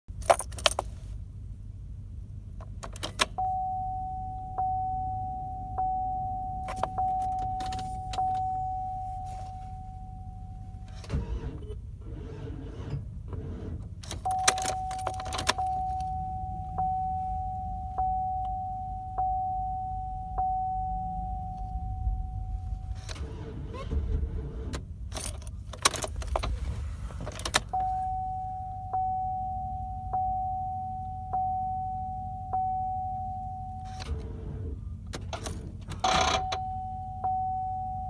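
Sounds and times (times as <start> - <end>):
key and ignition clicks: 0.1 - 1.0, 2.6 - 3.5, 6.6 - 8.6, 13.9 - 16.2, 24.7 - 26.6, 27.2 - 28.2
vehicle warning chime dinging: 3.1 - 11.1, 14.2 - 23.1, 27.6 - 34.1, 36.0 - 38.0.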